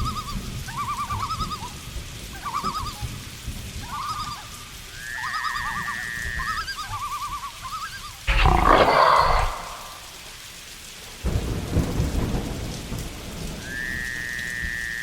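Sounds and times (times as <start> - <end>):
loud animal roar: 8.3 - 10.2
warbling animal calls: 8.3 - 10.2.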